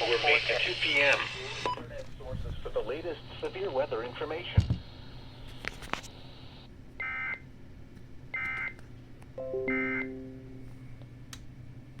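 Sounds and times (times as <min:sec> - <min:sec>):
low steady tones: 0:09.4 - 0:11.0.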